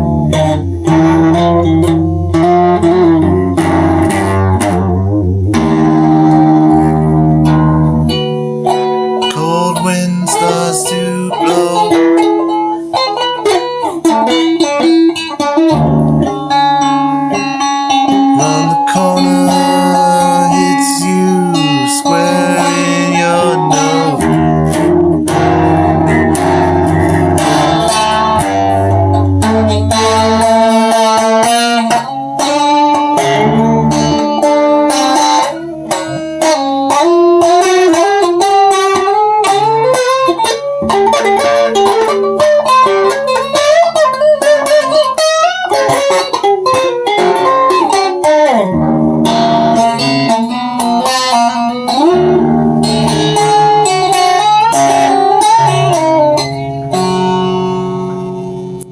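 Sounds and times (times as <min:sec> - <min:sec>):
plucked guitar melody: 0:00.0 - 0:58.9
bass line: 0:15.6 - 0:38.2.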